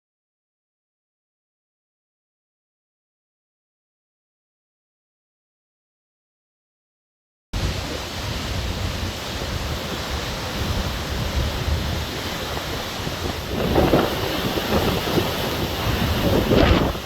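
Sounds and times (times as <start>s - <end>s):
wind buffeting microphone: 7.6s - 17.0s.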